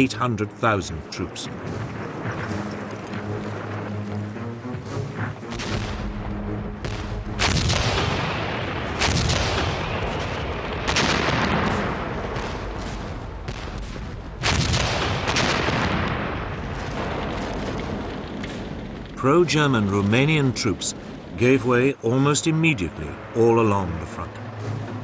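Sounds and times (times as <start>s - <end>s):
artillery blasts rumbling: 0.9s - 23.4s
smaller gunshots: 5.5s - 21.4s.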